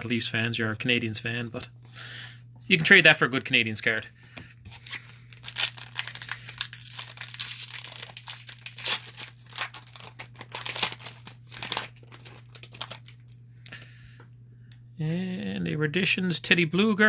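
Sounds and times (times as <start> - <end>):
low electrical hum: 0.0 - 17.0
card pack wrapper crinkling: 4.7 - 13.8.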